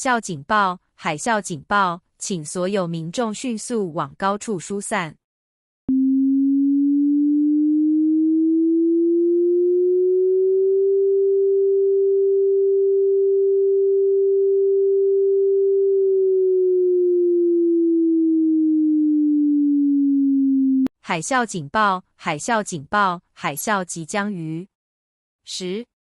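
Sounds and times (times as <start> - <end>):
synthesized siren tone: 5.9 - 20.9.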